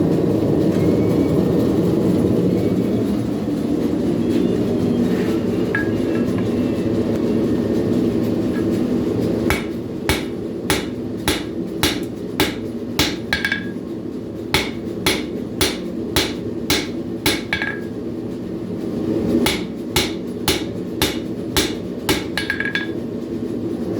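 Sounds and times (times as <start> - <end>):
hammer blows on anvil ringing: 9.5 - 13.8, 14.6 - 18.0, 19.5 - 23.0.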